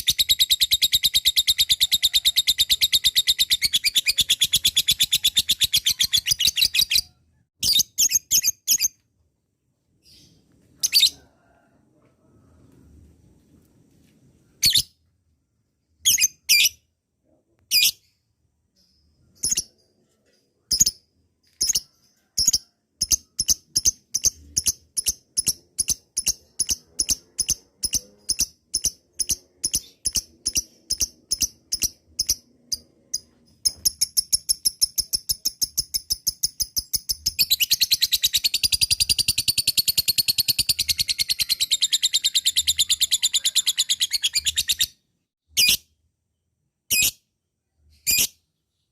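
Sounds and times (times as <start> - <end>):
bird chirping and chattering: 0.0 - 9.0, 17.7 - 45.0.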